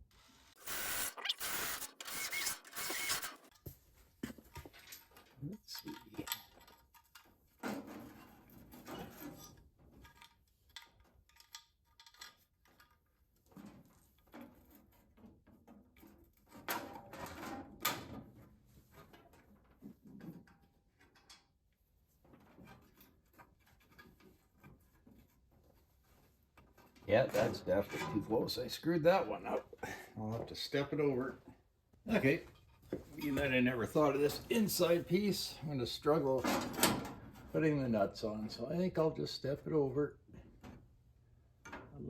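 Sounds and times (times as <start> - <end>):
metal parts clicking and scraping: 0.6 - 3.6.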